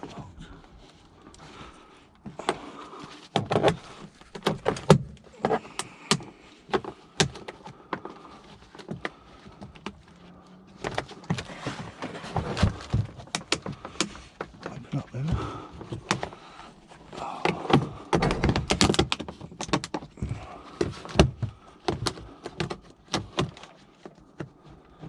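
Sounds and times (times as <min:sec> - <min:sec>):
suitcase lock clicking and rattling: 0:17.7 - 0:20.2.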